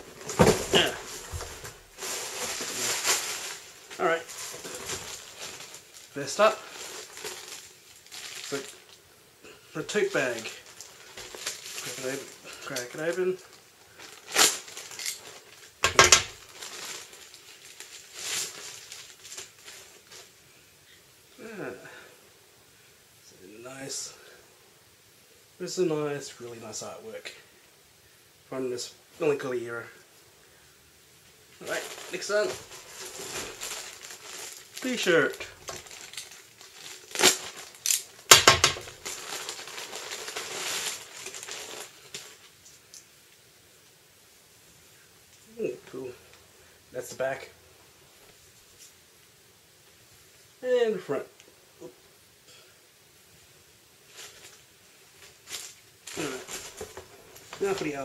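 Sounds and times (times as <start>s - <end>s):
packaging rustling: 0.0s - 9.0s, 9.9s - 20.4s, 31.6s - 43.0s, 54.1s - 58.0s.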